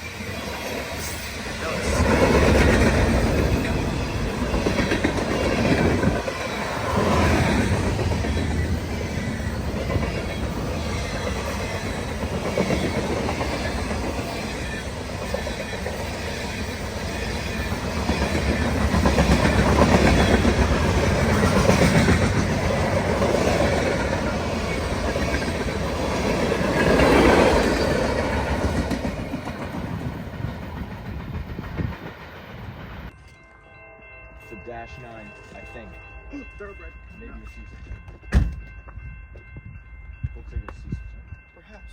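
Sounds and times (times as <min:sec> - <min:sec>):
train wheels clattering: 0:00.9 - 0:33.2.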